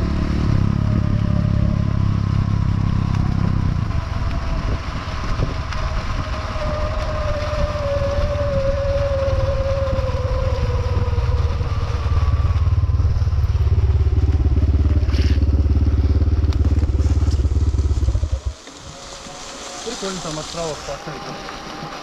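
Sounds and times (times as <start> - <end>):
vehicle engine chugging: 10.8 - 22.0.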